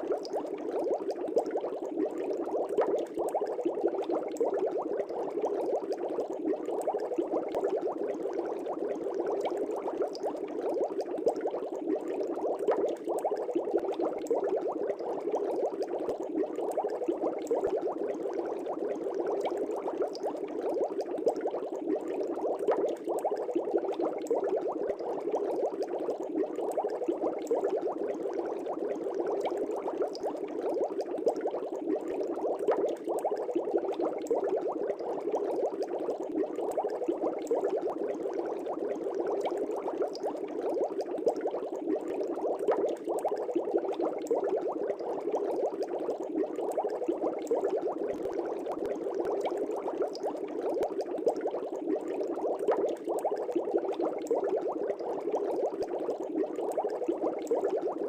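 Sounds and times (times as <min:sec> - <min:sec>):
aquarium air bubbles bubbling: 0:00.0 - 0:58.0.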